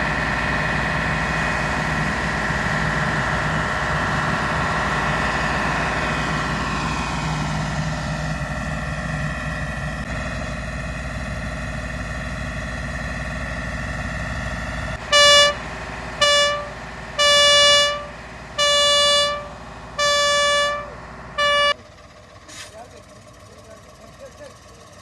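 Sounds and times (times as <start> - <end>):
vehicle engine running: 0.0 - 25.0
loud vehicle horn: 15.0 - 21.8.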